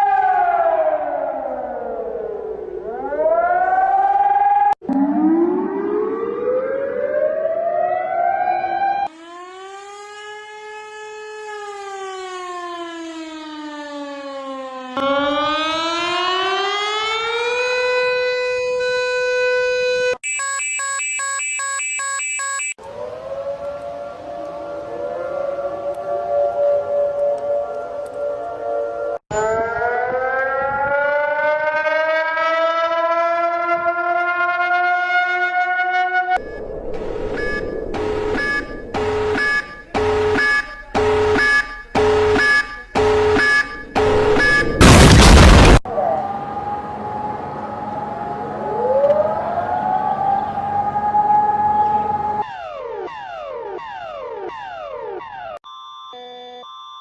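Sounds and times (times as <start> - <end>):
rising siren tone: 0.0 - 56.6
wavering siren-like tone: 0.0 - 56.7
pulsing electronic alarm tone: 15.0 - 22.8, 28.8 - 31.8, 35.8 - 46.9, 52.4 - 57.0
repeating electronic beeping: 20.2 - 22.8, 36.4 - 45.8.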